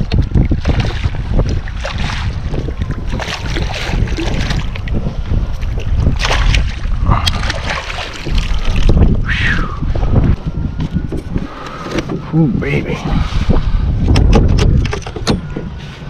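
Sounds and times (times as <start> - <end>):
water splashing around kayak: 0.0 - 9.2
wind buffeting microphone: 0.0 - 16.0.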